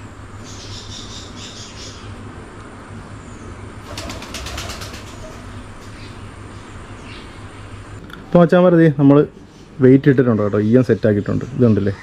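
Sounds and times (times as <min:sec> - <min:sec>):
birds chirping: 0:00.0 - 0:12.0
wings fluttering: 0:03.8 - 0:06.2.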